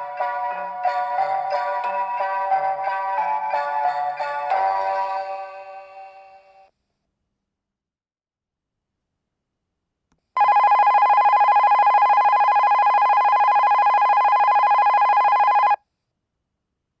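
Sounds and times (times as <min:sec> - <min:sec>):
alarm clock electric bell ringing: 0:10.4 - 0:15.8.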